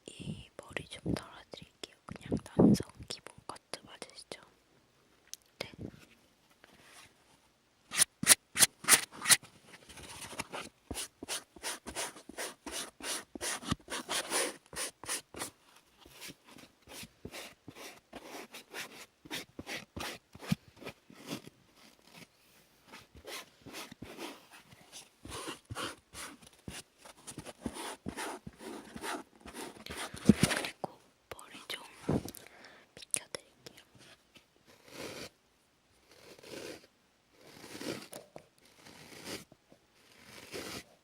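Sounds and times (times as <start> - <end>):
hair scratching against microphone: 7.9 - 9.4, 10.0 - 30.8, 34.8 - 35.3, 36.1 - 39.5, 40.1 - 40.9.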